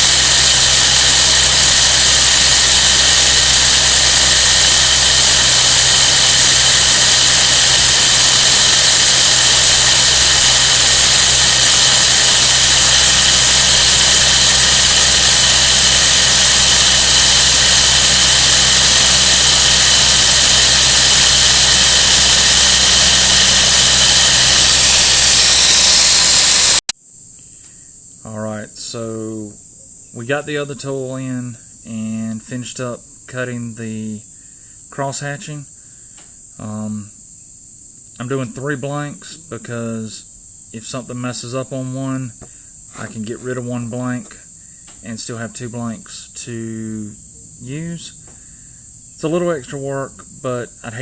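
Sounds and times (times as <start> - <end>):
milling machine whining: 0.0 - 26.9.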